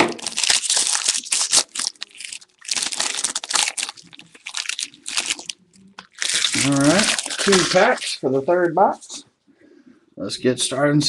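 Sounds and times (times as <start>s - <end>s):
plastic wrapping crinkling and tearing: 0.0s - 8.2s.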